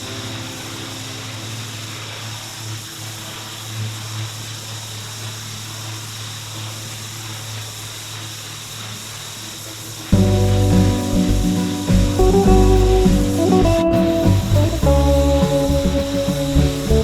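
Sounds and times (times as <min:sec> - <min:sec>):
water jet hissing: 0:00.0 - 0:17.0
music: 0:10.2 - 0:17.0
pressure washer engine running: 0:10.2 - 0:17.0.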